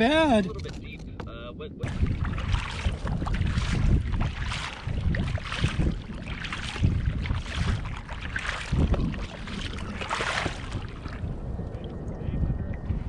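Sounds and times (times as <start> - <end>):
wind on microphone: 0.0 - 13.0
paddle strokes splashing: 1.9 - 11.2.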